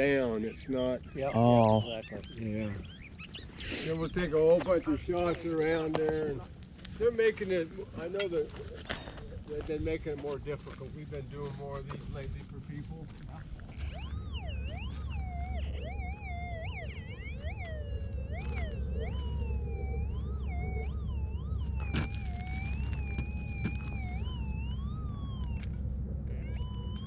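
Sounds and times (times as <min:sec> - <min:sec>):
steady low drone: 0:00.0 - 0:27.0
gliding lead melody: 0:13.8 - 0:27.0.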